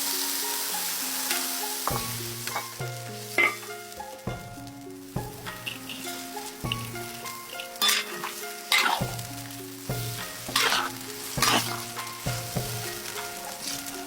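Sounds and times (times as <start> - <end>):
food sizzling in a pan: 0.0 - 14.0
slow melodic background music: 0.0 - 14.0
scraping in a pan: 5.2 - 14.0.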